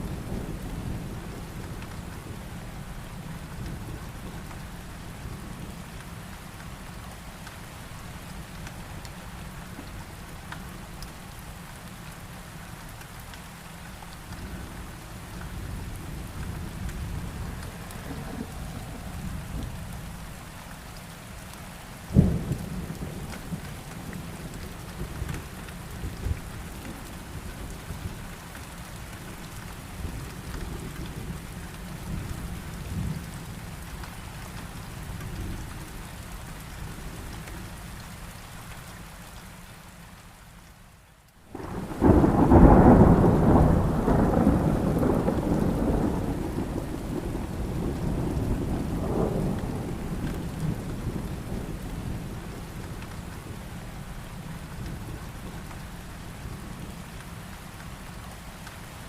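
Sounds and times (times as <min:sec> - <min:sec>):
steady rain: 0:00.0 - 0:59.0
thunder rumbling: 0:15.7 - 0:20.4, 0:41.5 - 0:57.0
sharp thunderclap: 0:41.6 - 0:51.7.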